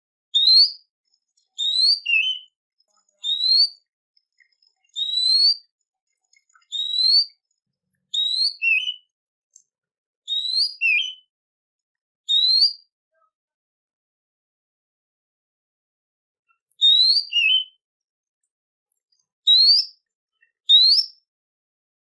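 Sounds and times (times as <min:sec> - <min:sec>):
songbird whistled phrase: 0:00.4 - 0:00.9, 0:01.6 - 0:02.6, 0:03.2 - 0:03.8, 0:05.0 - 0:05.7, 0:06.6 - 0:07.4, 0:08.2 - 0:09.1, 0:10.3 - 0:11.3, 0:12.3 - 0:12.9, 0:16.8 - 0:17.8, 0:19.5 - 0:19.9, 0:20.7 - 0:21.2.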